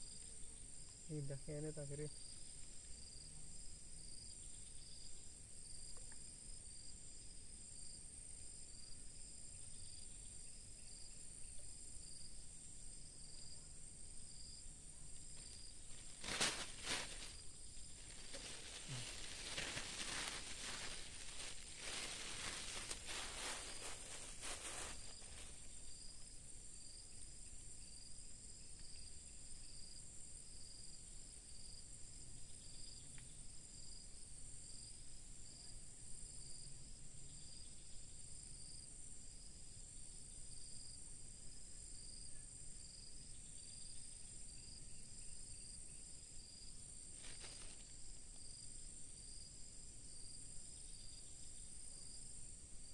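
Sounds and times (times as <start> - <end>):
insects trilling: 0.0 - 38.9, 40.6 - 52.9
lower pulsing insect call: 0.0 - 52.9
brief rustle: 16.0 - 17.4.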